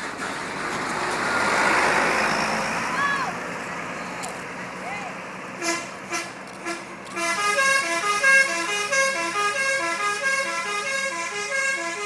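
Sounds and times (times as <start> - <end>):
bus horn playing quick melody: 5.6 - 12.0.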